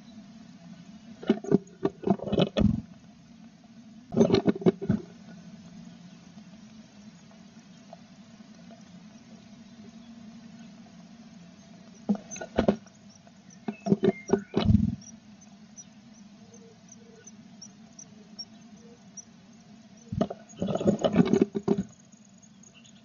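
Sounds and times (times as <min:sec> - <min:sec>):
scrabbling knocks and rustling: 0:01.2 - 0:02.8, 0:04.2 - 0:05.1, 0:12.0 - 0:12.9, 0:20.1 - 0:22.0
nestlings squeaking: 0:11.8 - 0:19.3.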